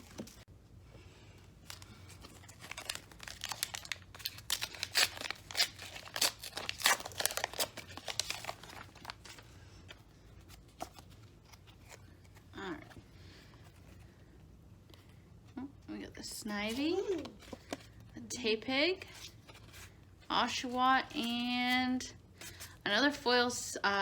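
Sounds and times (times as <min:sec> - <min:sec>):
plastic wrapper tearing and crinkling: 0:01.6 - 0:09.5.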